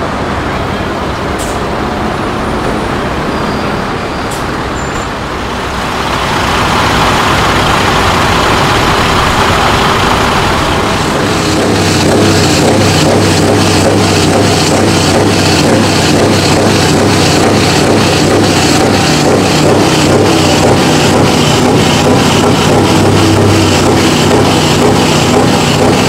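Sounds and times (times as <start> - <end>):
truck engine revving: 0.0 - 26.0.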